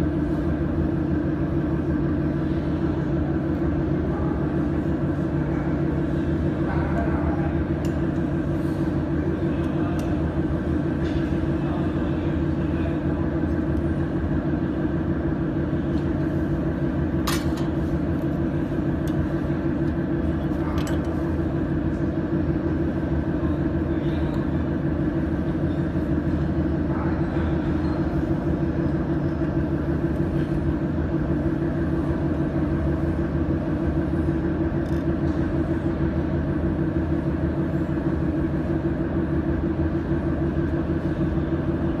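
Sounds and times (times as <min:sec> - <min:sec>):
welding machine hum: 0:13.2 - 0:26.9.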